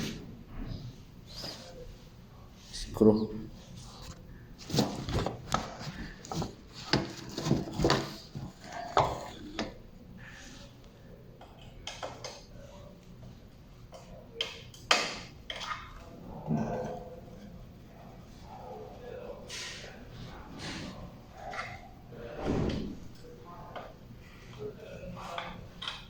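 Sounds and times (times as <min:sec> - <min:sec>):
small hardware and tools clattering: 0:04.6 - 0:09.8.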